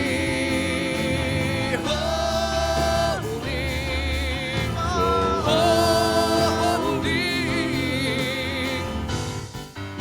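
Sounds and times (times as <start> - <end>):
voices singing: 0.0 - 9.3
instrumental accompaniment: 0.0 - 10.0.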